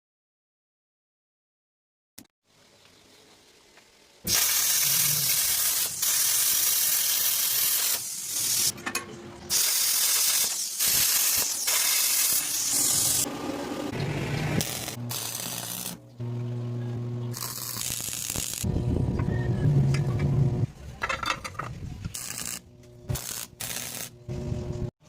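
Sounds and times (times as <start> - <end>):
loud hissing: 4.2 - 8.7, 9.5 - 13.3.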